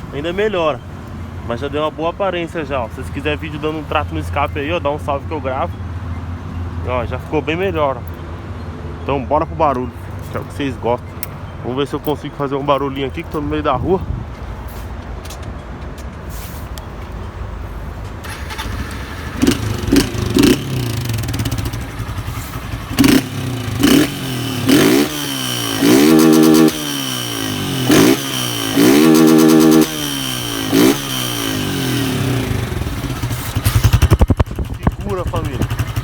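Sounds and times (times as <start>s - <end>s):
motorcycle engine revving: 18.2s - 36.0s.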